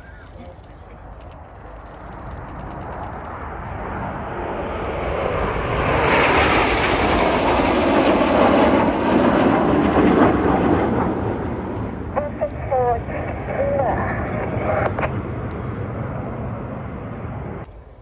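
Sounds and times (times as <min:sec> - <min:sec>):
jets passing overhead: 0:00.0 - 0:17.7.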